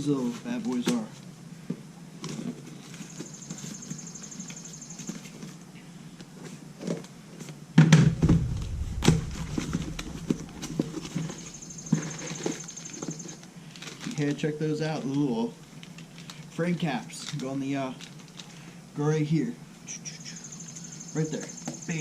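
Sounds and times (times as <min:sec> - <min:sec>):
bump and rumble of handling: 0:08.1 - 0:11.6.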